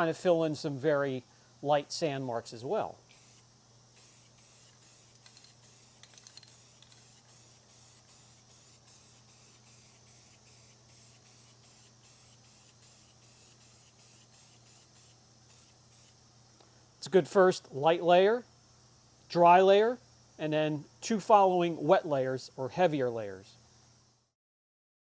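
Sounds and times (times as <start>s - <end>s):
aerosol can hissing in bursts: 3.0s - 16.2s.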